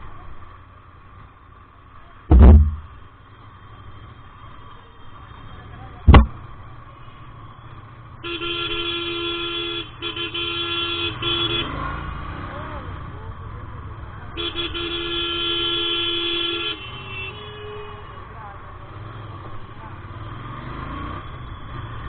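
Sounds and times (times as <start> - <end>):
road noise: 0.0 - 22.0
loud low thumps: 2.3 - 3.0, 6.1 - 6.4
vehicle horn: 8.2 - 11.8, 14.4 - 18.2.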